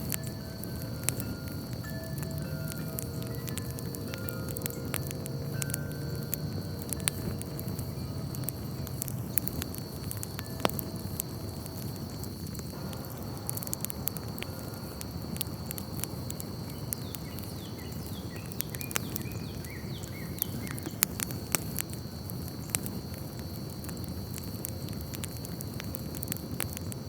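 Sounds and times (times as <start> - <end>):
steady high tone: 0.0 - 11.8, 12.7 - 16.6
campfire crackling and popping: 0.0 - 27.0
low rush of burning: 0.0 - 27.0.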